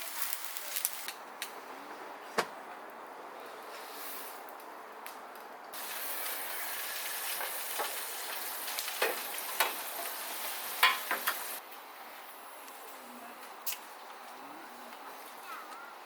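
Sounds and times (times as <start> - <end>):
food sizzling in a hot pan: 0.0 - 1.1, 5.8 - 11.6.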